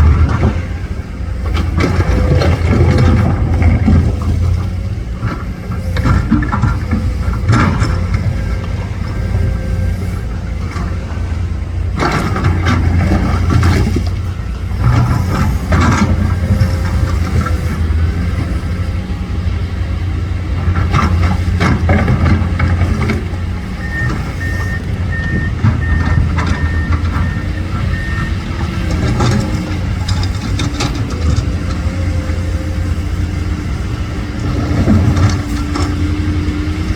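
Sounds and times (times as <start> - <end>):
diesel machinery running: 0.0 - 36.9
reversing alarm beeping: 23.6 - 29.5.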